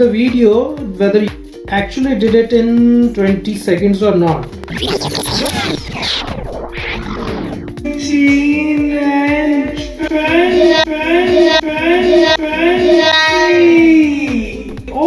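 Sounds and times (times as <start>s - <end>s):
steady music beat: 0.0s - 15.0s
high singing voice: 4.7s - 15.0s.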